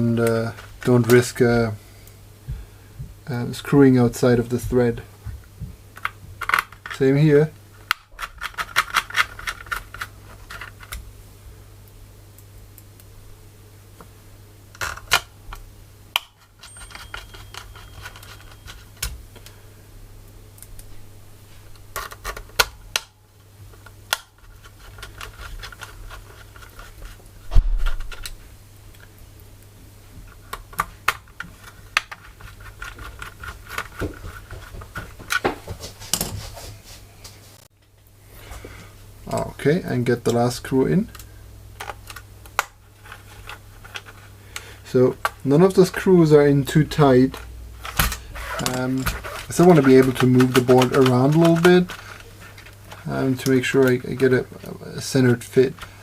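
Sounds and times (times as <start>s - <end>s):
steady low hum: 0.0s - 56.0s
screwdriver clicking and scraping: 16.4s - 19.1s, 48.4s - 52.7s.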